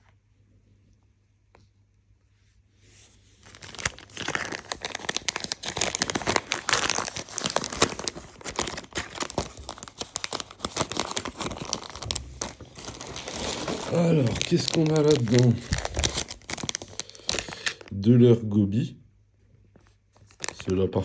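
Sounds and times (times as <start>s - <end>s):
packaging crinkling and tearing: 3.4s - 18.0s, 20.2s - 21.0s.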